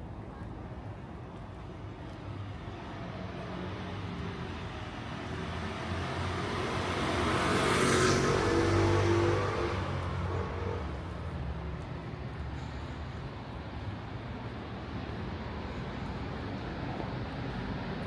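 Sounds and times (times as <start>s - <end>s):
car passing by: 3.2s - 11.4s.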